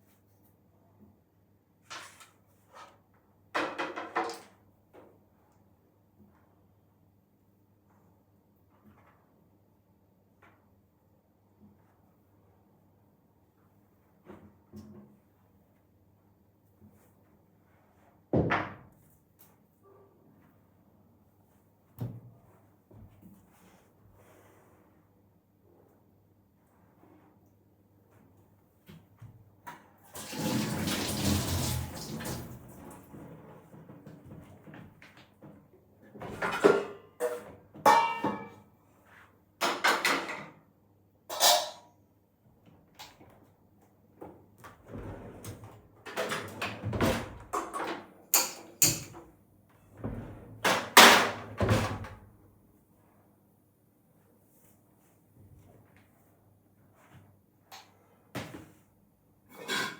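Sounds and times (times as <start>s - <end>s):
tap water running into sink: 30.1s - 32.8s.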